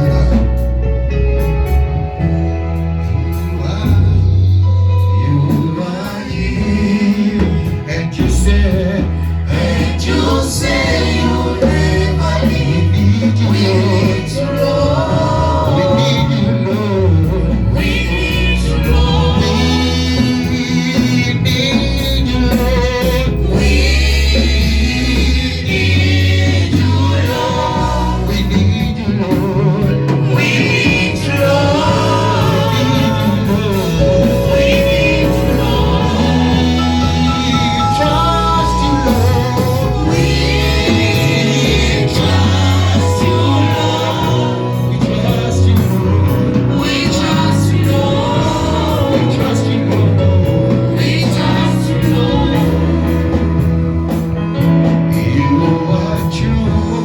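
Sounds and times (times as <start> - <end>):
congregation singing: 0.0 - 57.0
loud band with heavy bass: 0.0 - 57.0.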